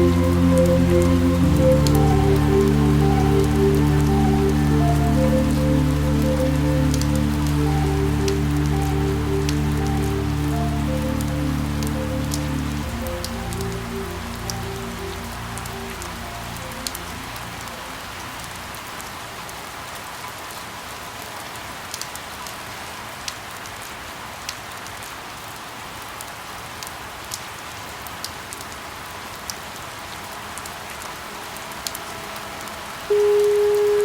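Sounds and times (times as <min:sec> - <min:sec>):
steady rain hiss: 0:00.0 - 0:34.0
chime-like tone: 0:31.5 - 0:34.0.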